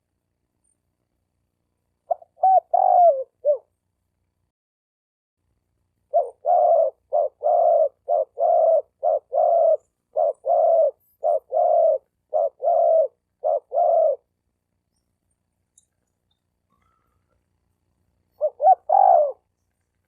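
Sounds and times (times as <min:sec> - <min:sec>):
dove cooing: 0:02.1 - 0:03.7, 0:06.1 - 0:14.3, 0:18.4 - 0:19.5.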